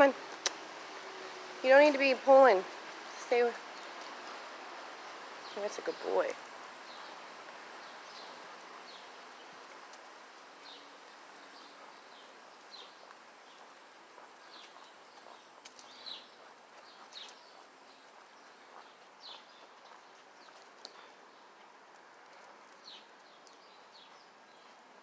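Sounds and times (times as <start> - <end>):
outdoor hiss: 0.0 - 19.4
bird chirps: 14.4 - 18.0.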